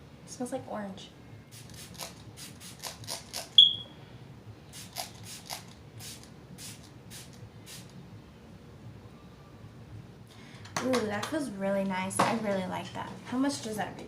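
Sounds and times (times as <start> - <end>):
spray bottle hissing: 1.6 - 3.0, 4.8 - 7.9.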